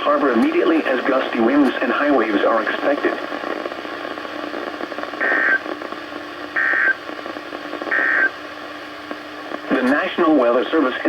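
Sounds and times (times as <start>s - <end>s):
radio hiss: 0.0s - 11.0s
digital data tone bursts: 5.2s - 5.6s, 7.9s - 8.3s.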